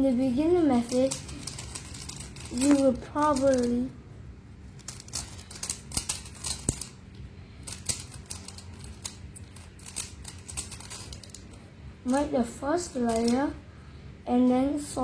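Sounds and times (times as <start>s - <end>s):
puzzle cube plastic clicks: 0.8s - 3.8s, 4.8s - 7.0s, 7.6s - 11.6s.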